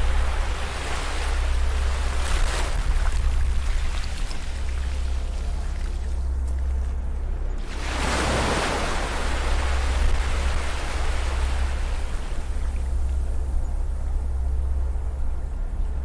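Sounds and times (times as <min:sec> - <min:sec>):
steady low rumble: 0:00.0 - 0:16.0
ocean wave breaking: 0:07.6 - 0:12.8.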